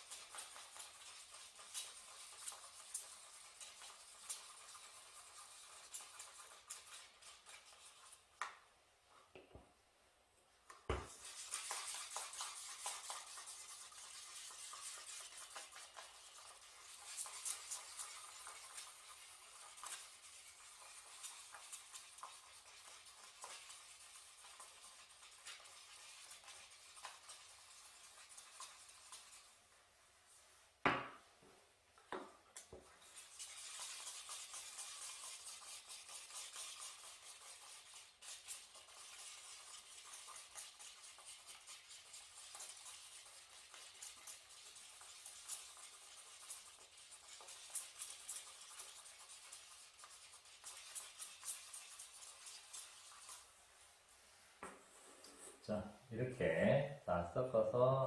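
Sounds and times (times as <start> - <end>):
paint stirring scraping: 0.0 - 9.4, 10.7 - 57.8
stirrer clicking against cup: 11.1 - 29.5.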